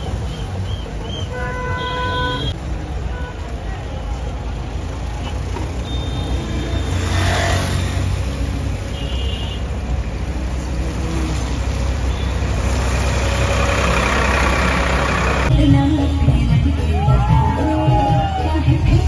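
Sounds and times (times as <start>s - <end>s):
traffic rumble: 0.0s - 19.0s
vehicle passing: 6.4s - 8.8s, 9.8s - 15.5s.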